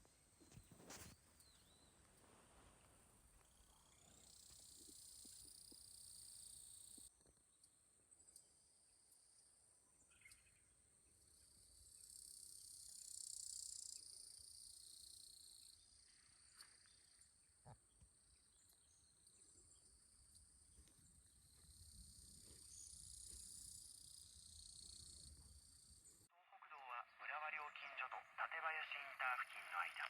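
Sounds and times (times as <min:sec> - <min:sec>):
insects chirring: 0:18.2 - 0:26.2.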